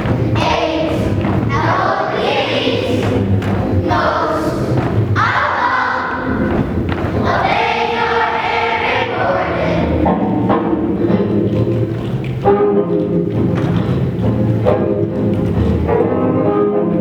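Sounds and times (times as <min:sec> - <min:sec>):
children's choir singing: 0:00.0 - 0:11.2
low thudding accompaniment: 0:00.0 - 0:16.9.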